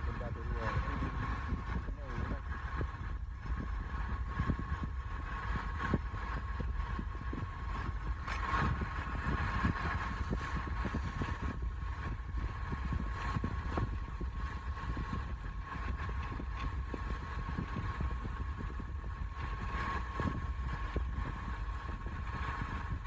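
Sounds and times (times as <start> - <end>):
wood lathe humming: 10.0 - 23.0.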